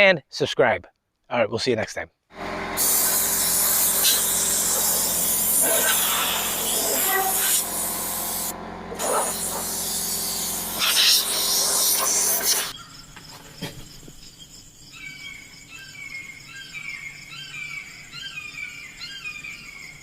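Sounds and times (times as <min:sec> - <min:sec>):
sawmill engine hum: 0:02.3 - 0:12.8
loud even hiss: 0:02.8 - 0:12.7.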